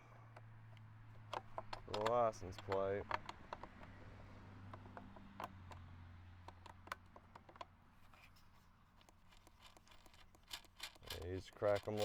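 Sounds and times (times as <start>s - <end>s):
wrench clicking on bolts: 9.0s - 12.0s.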